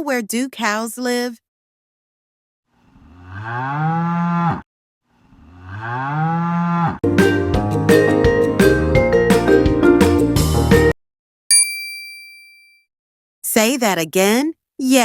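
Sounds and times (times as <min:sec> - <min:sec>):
cow mooing: 0:02.8 - 0:04.6, 0:05.2 - 0:07.0.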